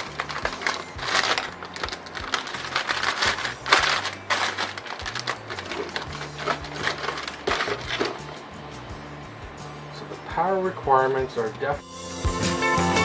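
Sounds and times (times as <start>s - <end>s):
hands handling computer parts: 0.0s - 8.4s
background music with bass line: 0.0s - 13.0s.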